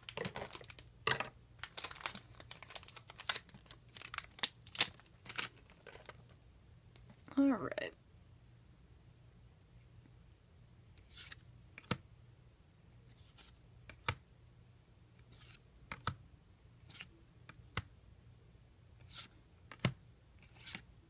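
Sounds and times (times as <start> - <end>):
cards swishing: 20.4 - 20.8.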